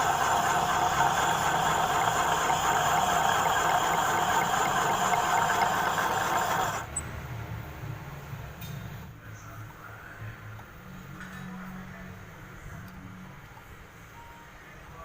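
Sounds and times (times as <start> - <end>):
metal lathe boring: 0.0 - 6.9.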